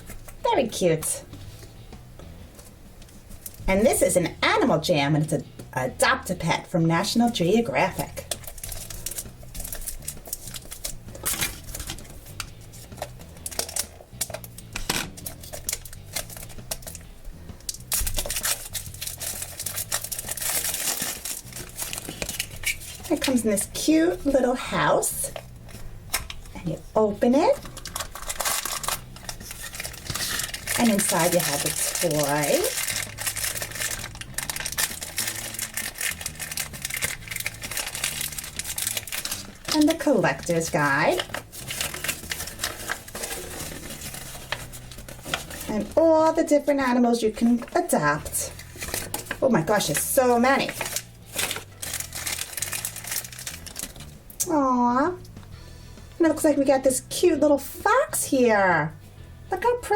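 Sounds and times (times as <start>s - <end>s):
hands opening toy package: 8.0s - 23.3s, 27.6s - 40.0s, 41.2s - 45.9s, 48.5s - 54.2s.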